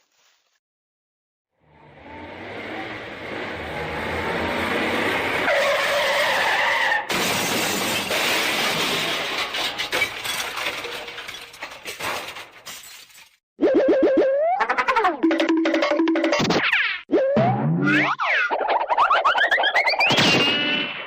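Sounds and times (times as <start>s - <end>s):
vehicle noise: 1.5s - 7.1s
car crash: 4.8s - 13.2s
glass breaking: 7.1s - 13.4s
debris falling and tinkling: 7.5s - 13.4s.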